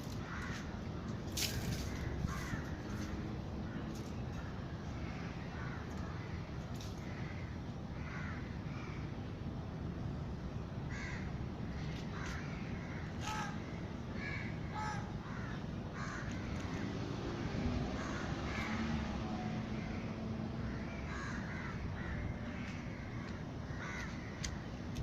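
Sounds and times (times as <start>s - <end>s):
crows cawing: 0.2s - 0.7s, 1.4s - 4.0s, 7.0s - 9.0s, 10.9s - 16.8s, 18.0s - 19.0s, 20.6s - 24.6s.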